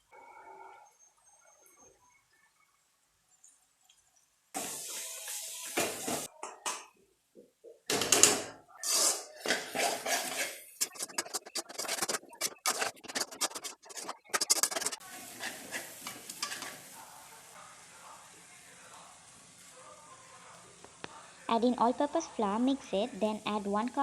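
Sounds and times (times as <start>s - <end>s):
spoon scraping a cooking pan: 8.0s - 17.0s
faint steady hiss: 15.0s - 24.0s.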